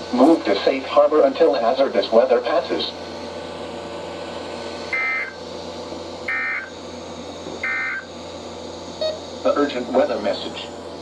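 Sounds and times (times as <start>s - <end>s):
faint radio hiss and hum: 9.0s - 10.8s.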